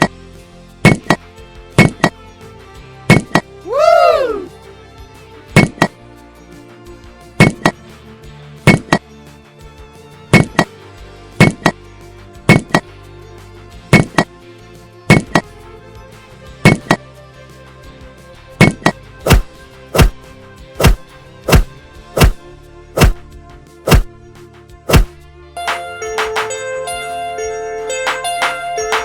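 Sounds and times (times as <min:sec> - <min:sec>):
background music: 0:00.0 - 0:29.0
sharp knocks: 0:00.8 - 0:01.2, 0:01.8 - 0:02.2, 0:03.1 - 0:03.5, 0:05.6 - 0:06.0, 0:07.4 - 0:07.8, 0:08.7 - 0:09.0, 0:10.3 - 0:10.7, 0:11.4 - 0:11.8, 0:12.5 - 0:12.8, 0:14.0 - 0:14.3, 0:15.1 - 0:15.4, 0:16.7 - 0:17.0, 0:18.6 - 0:20.2, 0:20.8 - 0:22.4, 0:23.0 - 0:23.2, 0:23.9 - 0:24.1, 0:24.9 - 0:25.2.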